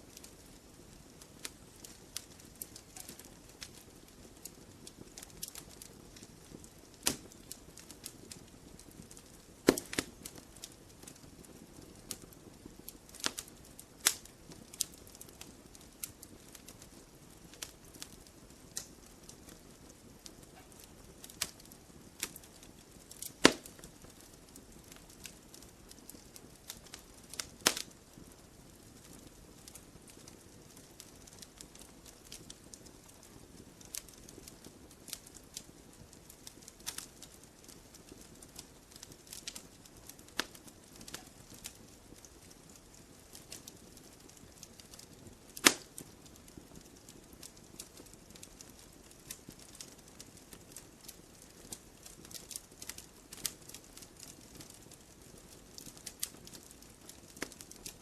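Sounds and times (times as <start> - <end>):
fire hissing: 0.1 - 16.8, 20.2 - 26.2, 43.3 - 46.1
campfire pops and snaps: 0.1 - 28.3, 29.0 - 58.0.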